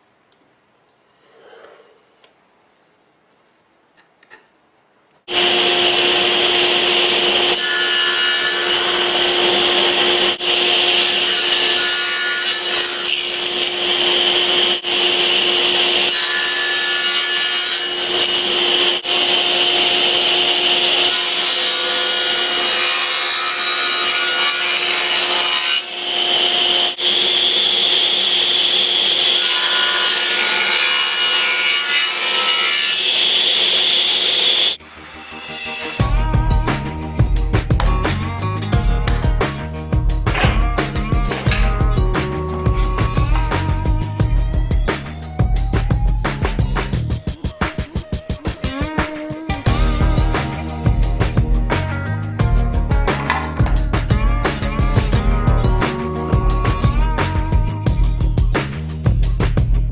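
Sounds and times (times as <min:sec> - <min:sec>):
power tool cutting wood: 0:05.3 - 0:37.1, 0:38.8 - 0:45.2.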